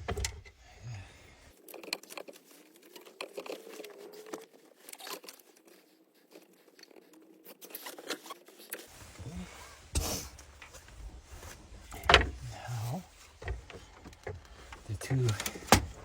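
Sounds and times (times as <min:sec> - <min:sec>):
rustling and crinkling: 0:00.0 - 0:16.0
small clicks of plastic parts: 0:01.6 - 0:05.7, 0:13.3 - 0:16.0.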